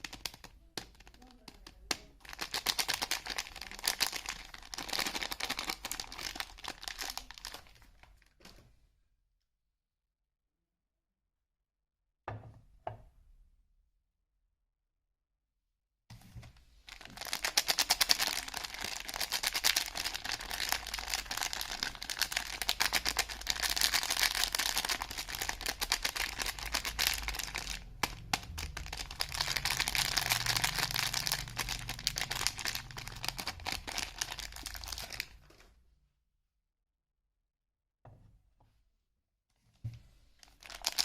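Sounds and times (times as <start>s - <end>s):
wrapper crinkling and rustling: 0.0s - 8.6s, 16.7s - 35.7s, 40.4s - 41.0s.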